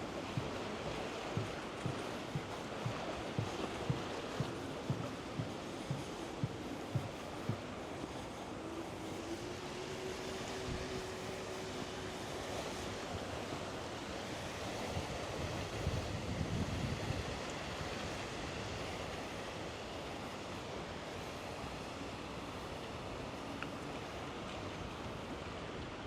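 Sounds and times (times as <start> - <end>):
rushing outdoor noise: 0.0 - 26.0
wind buffeting microphone: 14.8 - 18.8.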